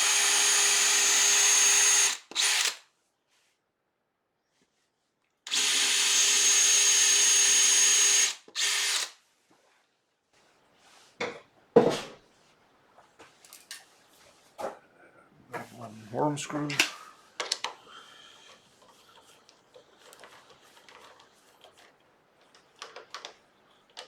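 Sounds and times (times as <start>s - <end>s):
drill motor whining: 0.0s - 2.8s, 5.5s - 9.1s.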